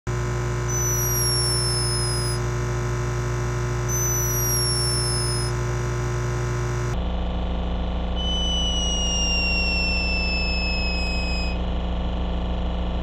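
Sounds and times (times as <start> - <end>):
steady low hum: 0.1 - 13.0
high-pitched falling squeaks: 0.7 - 2.4, 3.9 - 5.5, 8.2 - 11.6.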